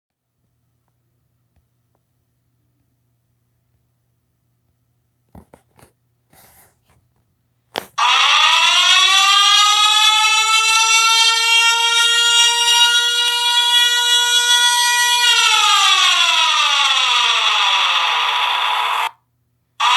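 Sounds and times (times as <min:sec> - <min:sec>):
siren wailing: 0:08.0 - 0:19.2.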